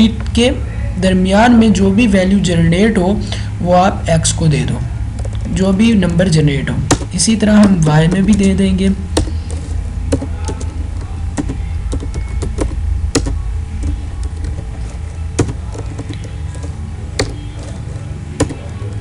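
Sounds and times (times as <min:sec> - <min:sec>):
steady low hum: 0:00.0 - 0:19.0
computer keyboard keys clicking: 0:11.4 - 0:14.6.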